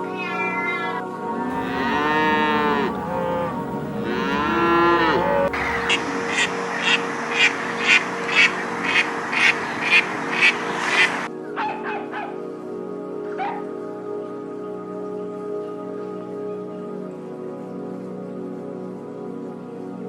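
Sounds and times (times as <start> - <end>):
drawn-out animal calls: 0.0 - 7.0
background music: 0.0 - 20.0.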